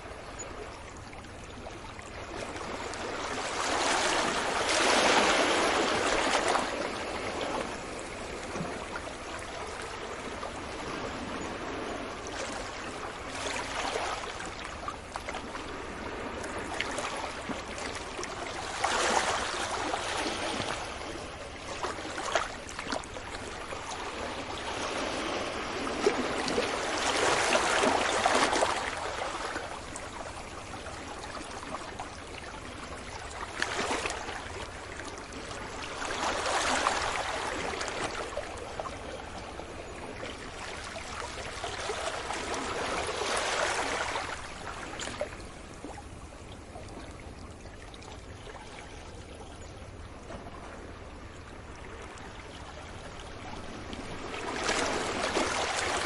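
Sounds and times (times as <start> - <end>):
ocean waves washing onto beach: 1.8 - 46.3, 50.1 - 56.0.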